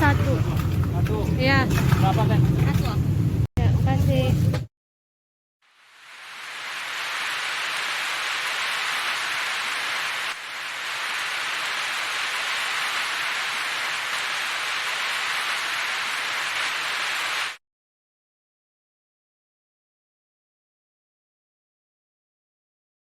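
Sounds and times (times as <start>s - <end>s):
running water hiss: 5.7s - 17.6s.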